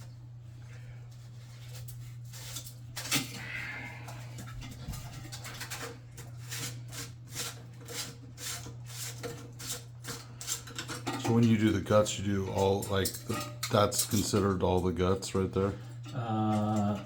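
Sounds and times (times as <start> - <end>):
steady low hum: 0.0 - 17.0
toilet parts and tools clinking: 4.1 - 17.0.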